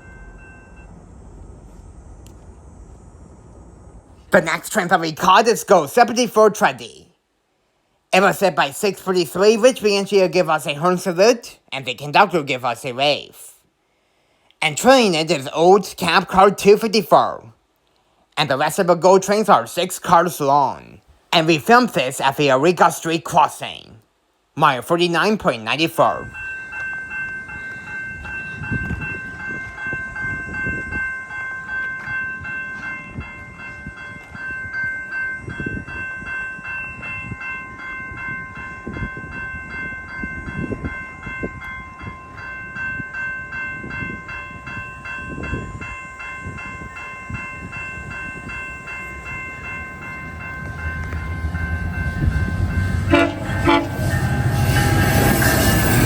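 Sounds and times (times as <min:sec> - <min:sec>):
level crossing warning bells: 0:00.0 - 0:01.8, 0:04.3 - 0:07.0, 0:08.2 - 0:13.3, 0:24.6 - 0:56.0
rumble of train passing: 0:00.0 - 0:06.0, 0:26.0 - 0:56.0
train horn blasts: 0:52.9 - 0:55.8.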